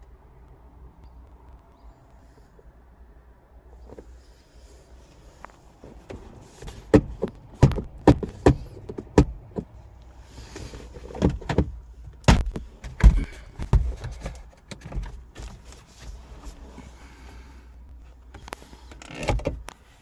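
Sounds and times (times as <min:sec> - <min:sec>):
sharp clicks and knocks: 0:06.0 - 0:09.8.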